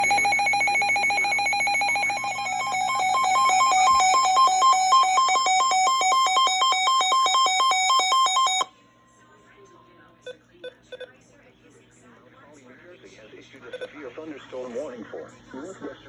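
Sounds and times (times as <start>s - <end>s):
electronic alert beeps trilling: 0.0s - 8.7s.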